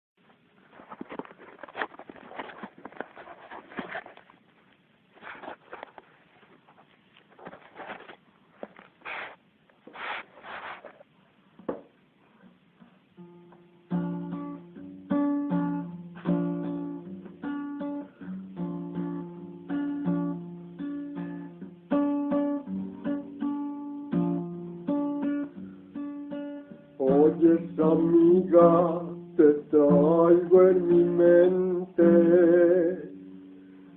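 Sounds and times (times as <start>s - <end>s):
acoustic guitar strumming: 13.2s - 33.9s.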